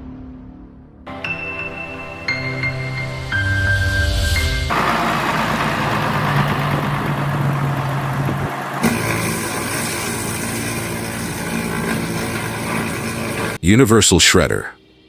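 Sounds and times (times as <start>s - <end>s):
engine-driven machinery running: 4.7s - 13.6s
steady engine drone: 4.7s - 13.6s.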